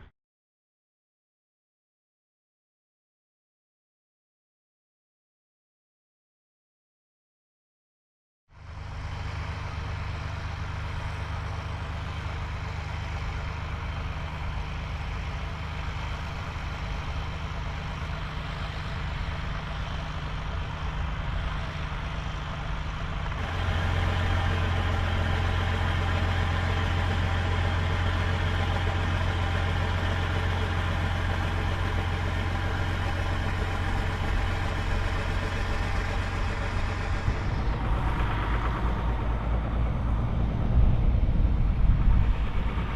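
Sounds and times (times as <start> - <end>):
tractor diesel engine running: 8.6 - 42.9.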